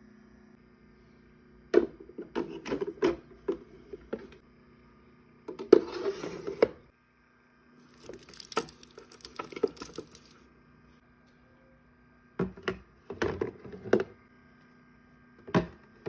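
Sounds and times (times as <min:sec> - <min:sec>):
packaging rustling: 0:07.9 - 0:10.4.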